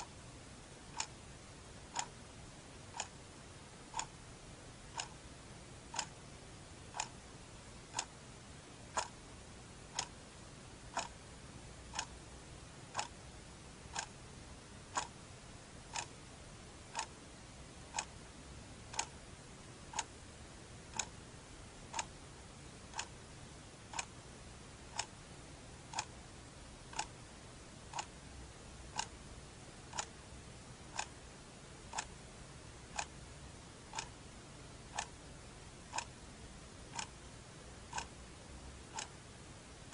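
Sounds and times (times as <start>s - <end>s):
faint background hiss: 0.0s - 39.9s
clock ticking: 0.8s - 2.2s, 2.9s - 3.2s, 3.8s - 4.2s, 4.9s - 5.3s, 5.9s - 6.2s, 6.9s - 7.3s, 7.9s - 8.2s, 8.9s - 9.2s, 9.9s - 10.2s, 10.8s - 11.3s, 11.9s - 12.2s, 12.9s - 13.2s, 13.8s - 14.2s, 14.9s - 15.2s, 15.8s - 16.2s, 16.9s - 17.2s, 17.8s - 18.2s, 18.9s - 19.2s, 19.8s - 20.2s, 20.8s - 21.2s, 21.8s - 22.2s, 22.8s - 23.2s, 23.8s - 24.2s, 24.8s - 25.2s, 25.8s - 26.2s, 26.8s - 27.2s, 27.9s - 28.2s, 28.8s - 29.2s, 29.8s - 30.2s, 30.9s - 31.2s, 31.8s - 32.2s, 32.8s - 33.2s, 33.8s - 34.2s, 34.9s - 36.2s, 36.9s - 38.2s, 38.8s - 39.2s.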